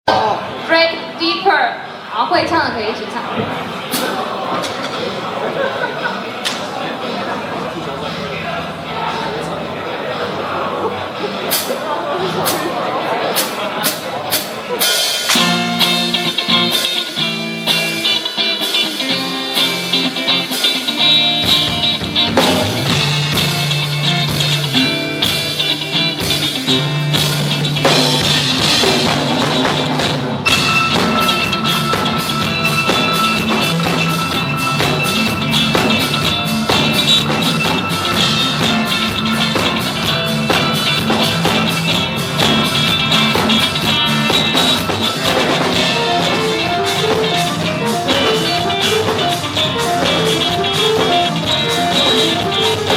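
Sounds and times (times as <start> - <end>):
drum kit: 3.3 - 5.2, 10.1 - 52.9
bass guitar: 3.3 - 52.9
electric guitar: 13.4 - 52.9.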